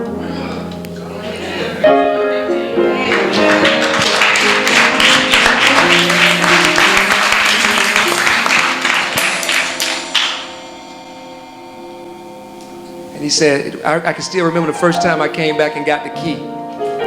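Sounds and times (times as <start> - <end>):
instrumental music: 0.0 - 17.0
congregation applauding: 1.3 - 10.8, 13.2 - 16.4.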